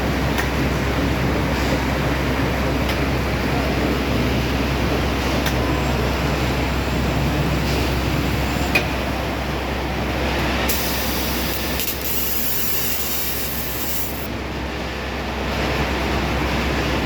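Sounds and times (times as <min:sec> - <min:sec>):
baling press machine hum: 0:05.6 - 0:14.4
high hiss: 0:10.7 - 0:14.3.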